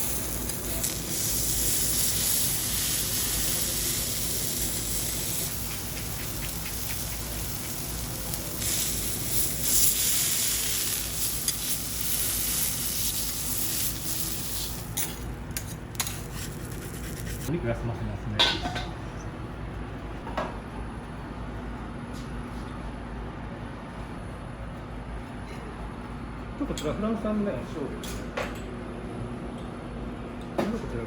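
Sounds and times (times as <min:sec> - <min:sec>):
beef sizzling on griddle: 0:00.0 - 0:15.3.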